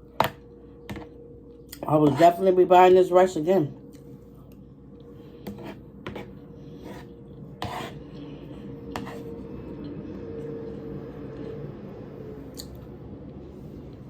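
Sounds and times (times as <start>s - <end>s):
faint steady hum: 0.0s - 14.0s
utensil scraping a plate: 5.4s - 8.2s, 8.9s - 9.3s.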